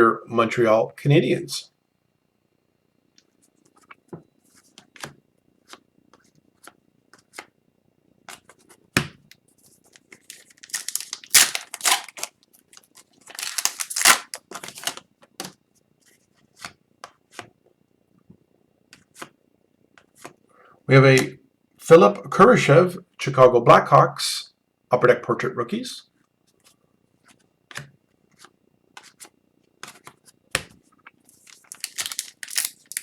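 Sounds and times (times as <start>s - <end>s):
foil wrapper crinkling: 9.9s - 15.0s, 31.3s - 33.0s
cards clicking and snapping: 10.0s - 15.5s, 31.4s - 33.0s.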